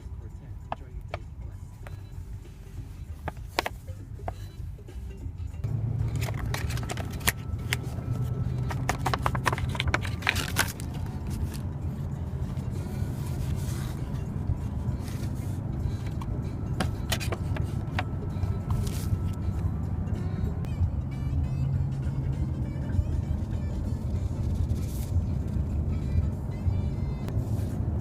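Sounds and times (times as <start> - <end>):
steady low rumble: 0.0 - 28.0
packaging clicks and scrapes: 6.1 - 11.6, 16.1 - 18.1.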